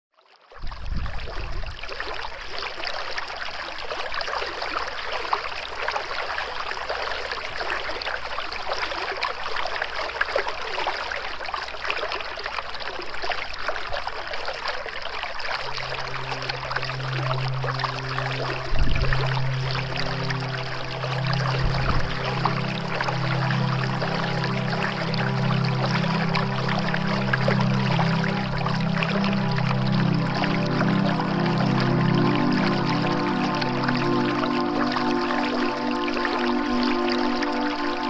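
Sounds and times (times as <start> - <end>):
running water: 0.4 - 38.0
low held musical tone: 15.4 - 38.0.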